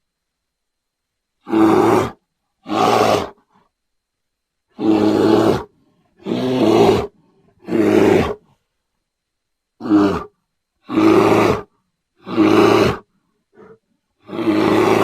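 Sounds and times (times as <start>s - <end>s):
bear roaring: 1.4s - 3.5s, 4.7s - 8.6s, 9.8s - 15.0s.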